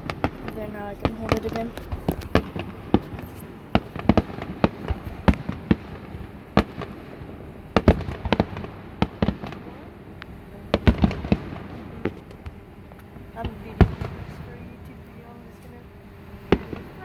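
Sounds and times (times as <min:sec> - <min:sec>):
fireworks bangs and pops: 0:00.0 - 0:15.1, 0:16.4 - 0:17.0.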